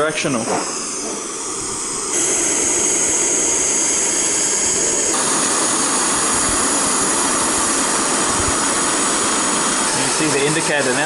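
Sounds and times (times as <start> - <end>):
gas burner hissing: 0.0 - 11.0.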